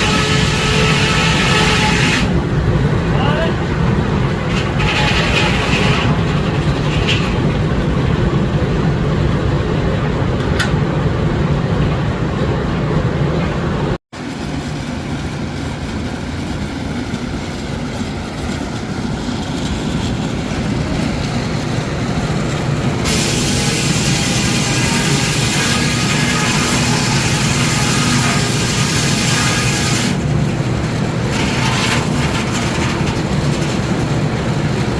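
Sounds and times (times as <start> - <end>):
sawmill mechanical rumble: 0.0 - 34.9
steam hissing: 14.2 - 30.2.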